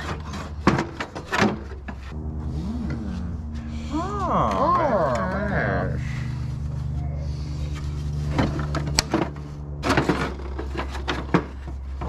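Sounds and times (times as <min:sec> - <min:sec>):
metal parts clanking and rattling: 0:00.0 - 0:02.1, 0:07.6 - 0:12.0
steady low hum: 0:00.0 - 0:12.0.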